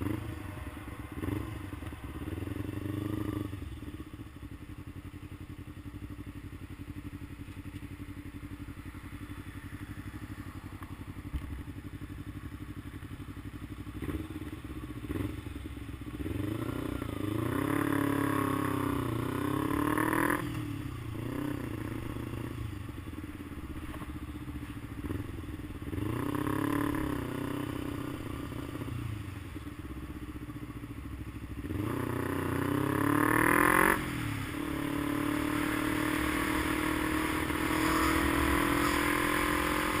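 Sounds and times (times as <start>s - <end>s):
vehicle engine revving: 31.6s - 40.0s.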